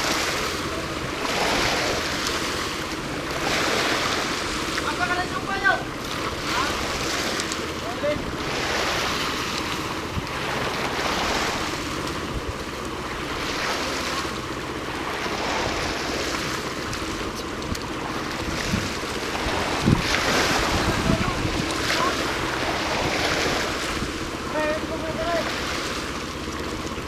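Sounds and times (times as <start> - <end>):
surf washing onto beach: 0.0 - 27.0
wind buffeting microphone: 15.4 - 24.6.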